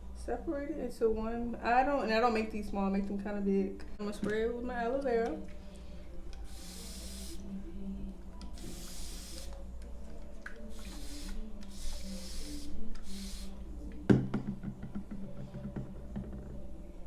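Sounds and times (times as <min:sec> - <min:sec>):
spray bottle spritzing: 0:10.7 - 0:13.5.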